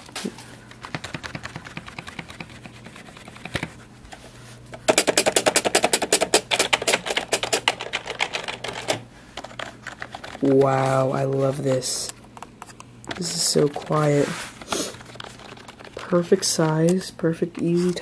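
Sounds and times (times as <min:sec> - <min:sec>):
loud keyboard clatter: 0:00.8 - 0:03.7, 0:04.9 - 0:11.4, 0:13.1 - 0:16.8.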